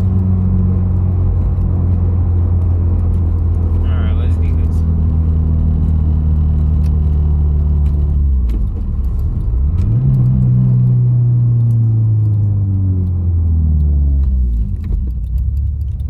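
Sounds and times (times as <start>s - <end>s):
car engine while driving: 0.0s - 16.0s
light clicks and rattles: 7.8s - 16.0s.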